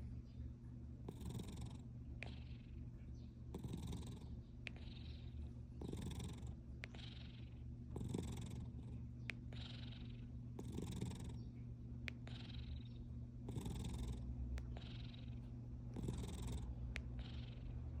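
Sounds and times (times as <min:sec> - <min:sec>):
cat purring with breathy rasp: 0:01.0 - 0:02.8, 0:03.5 - 0:11.5, 0:12.2 - 0:18.0.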